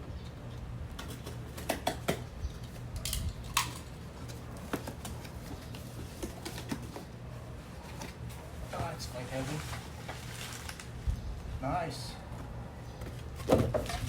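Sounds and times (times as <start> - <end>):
packaging rustling: 9.3 - 11.0.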